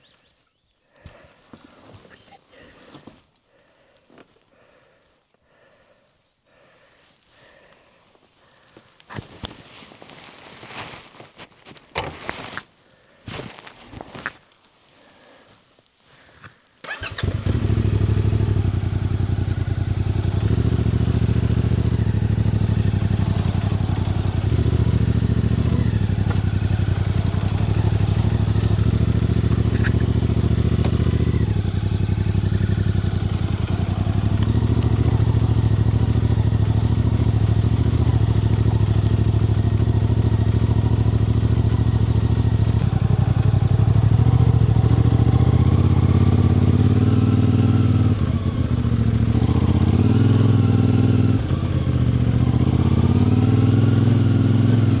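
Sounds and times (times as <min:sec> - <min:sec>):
motorcycle-like engine running: 0:16.9 - 0:55.0.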